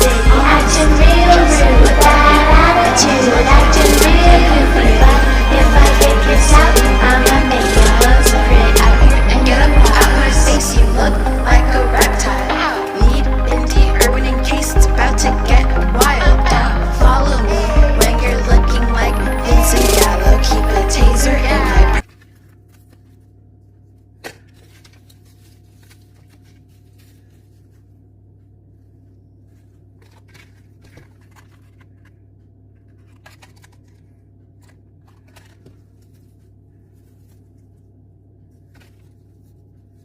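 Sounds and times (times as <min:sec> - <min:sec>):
backing music: 0:00.0 - 0:22.0
room hum: 0:00.0 - 0:40.0
packaging rustling and clicking: 0:30.0 - 0:32.2, 0:32.8 - 0:36.5.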